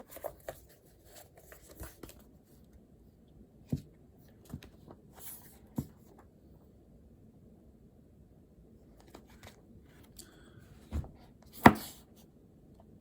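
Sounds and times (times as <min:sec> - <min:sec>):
paper rustling: 0:00.0 - 0:02.3.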